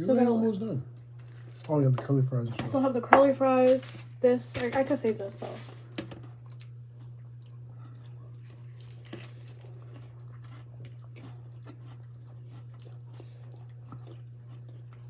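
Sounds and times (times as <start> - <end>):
low electrical hum: 0.0 - 15.0
person chewing food: 6.4 - 15.0.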